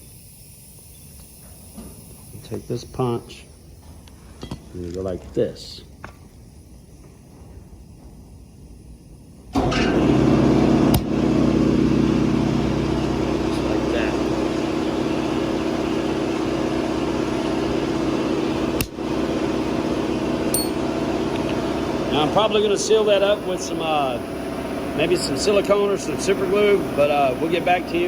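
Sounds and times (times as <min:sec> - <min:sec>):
machine hum: 0:05.1 - 0:28.0
loud steady motor: 0:09.6 - 0:28.0.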